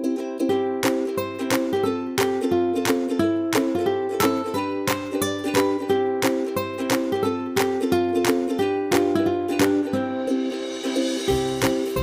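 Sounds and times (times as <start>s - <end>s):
plucked-string tune over beat: 0.0s - 12.0s.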